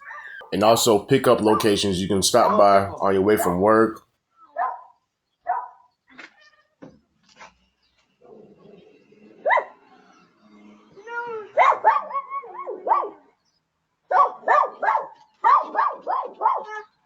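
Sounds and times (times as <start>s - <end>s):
dog barking: 4.5s - 5.8s, 9.4s - 9.8s, 11.6s - 13.2s, 14.1s - 16.9s.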